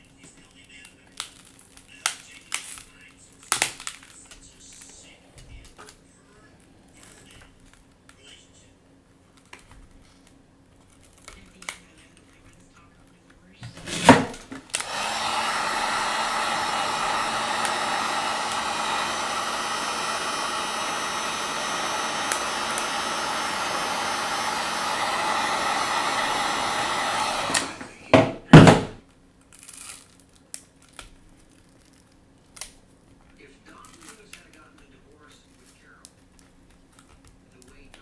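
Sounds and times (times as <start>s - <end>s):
heat gun blowing: 13.6s - 29.0s
loud knocks: 27.5s - 29.0s.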